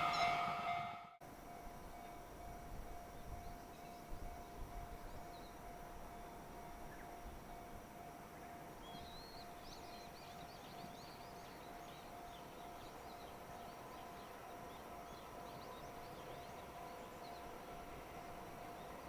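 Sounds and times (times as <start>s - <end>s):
small birds twittering: 8.3s - 17.8s.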